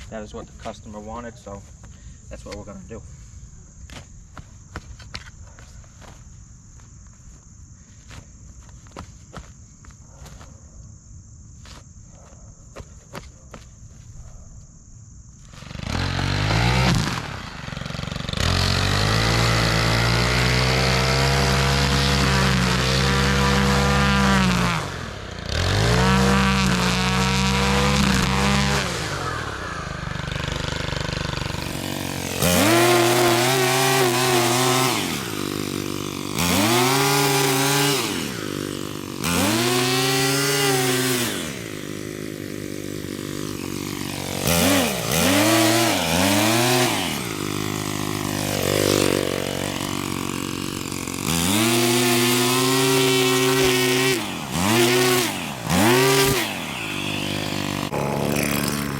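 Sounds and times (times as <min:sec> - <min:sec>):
small gas engine revving: 0:15.4 - 0:58.9.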